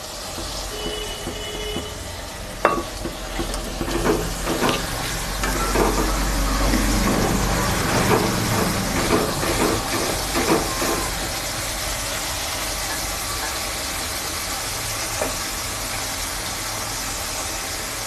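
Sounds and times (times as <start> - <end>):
onions sizzling in oil: 0.0 - 18.0
spatula scraping a pan: 0.2 - 11.4.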